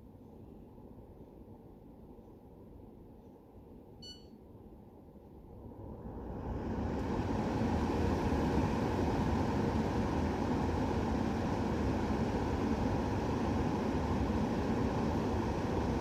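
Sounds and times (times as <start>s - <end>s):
air purifier fan whoosh: 5.5s - 16.0s.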